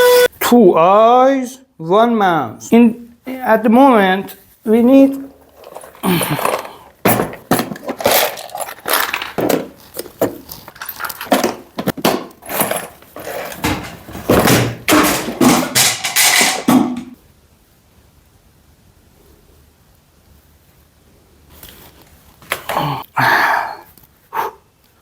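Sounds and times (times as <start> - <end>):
objects thudding on table: 6.0 - 8.4, 11.3 - 17.2.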